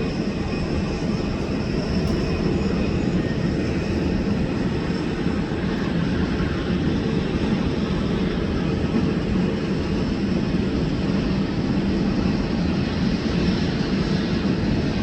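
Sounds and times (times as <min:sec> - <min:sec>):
jet engines rumbling: 0:00.0 - 0:15.0.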